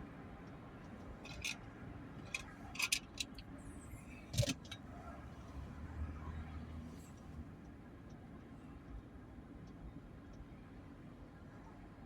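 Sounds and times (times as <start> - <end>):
road rumble inside vehicle: 0.0 - 12.0
clicks and rattles: 1.2 - 1.6.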